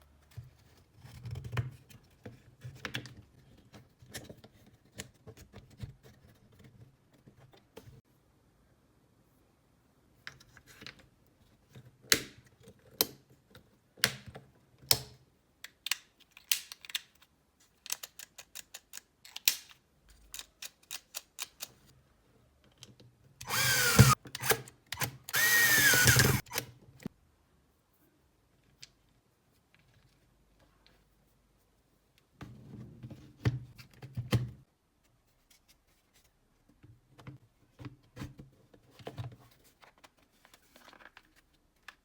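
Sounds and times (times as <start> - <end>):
cordless drill motor whining: 23.4 - 26.6.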